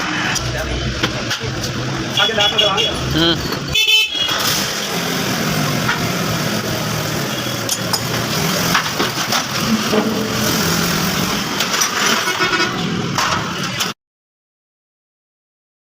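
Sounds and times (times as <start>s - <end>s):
street noise: 0.0s - 14.0s.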